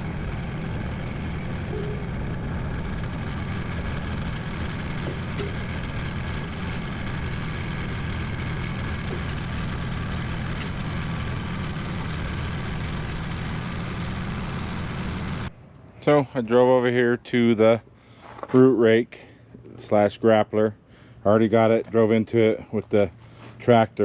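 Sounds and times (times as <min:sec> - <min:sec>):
tractor diesel engine running: 0:00.0 - 0:15.5.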